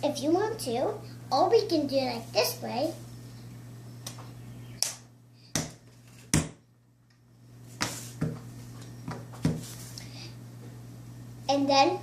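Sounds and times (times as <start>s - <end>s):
dough patted on hard surface: 7.8s - 9.7s.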